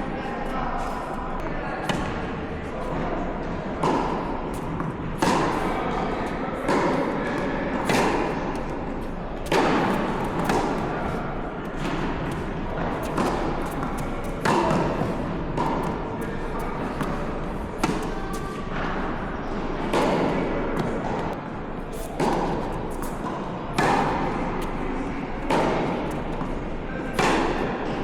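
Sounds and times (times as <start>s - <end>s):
tennis racket hitting ball: 1.8s - 28.0s
ball bouncing: 3.8s - 18.6s.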